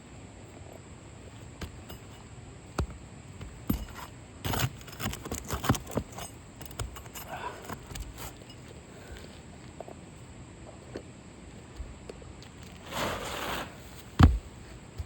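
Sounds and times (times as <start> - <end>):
rough scraping: 3.7 - 8.4, 12.7 - 14.6.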